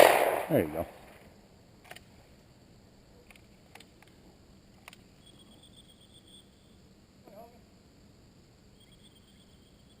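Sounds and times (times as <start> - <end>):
faint sharp clicks: 1.8 - 2.1, 3.2 - 5.1.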